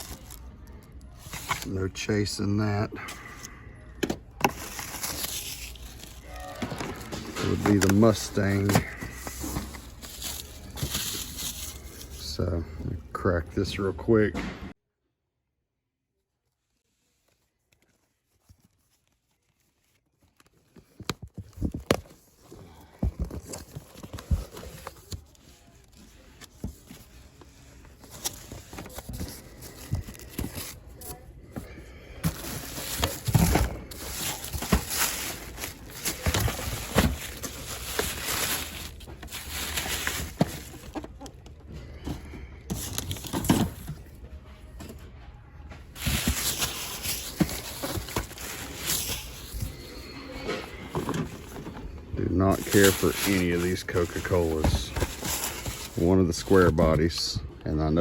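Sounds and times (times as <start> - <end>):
packaging rustling: 0.0 - 1.8, 4.3 - 12.3, 17.1 - 41.5, 42.7 - 44.8, 45.9 - 57.2
cardboard tearing: 32.3 - 41.0.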